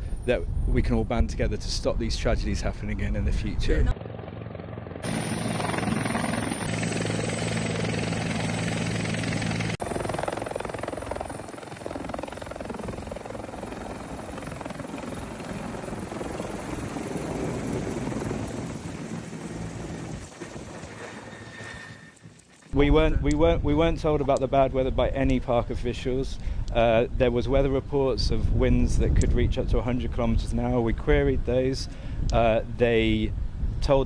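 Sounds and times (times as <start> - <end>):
helicopter engine and rotor: 3.9 - 22.8.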